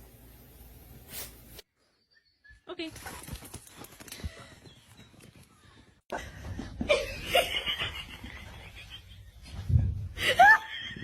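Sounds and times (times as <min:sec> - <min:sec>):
person laughing: 0:10.2 - 0:11.0.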